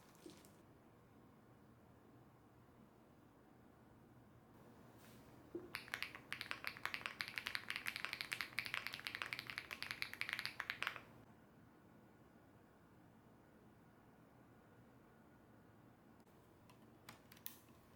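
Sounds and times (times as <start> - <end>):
fast mechanical keyboard typing: 5.7 - 11.2.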